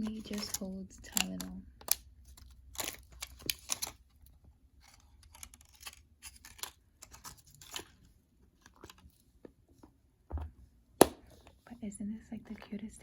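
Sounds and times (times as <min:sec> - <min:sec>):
plastic clicks and rustles: 0:00.0 - 0:09.6.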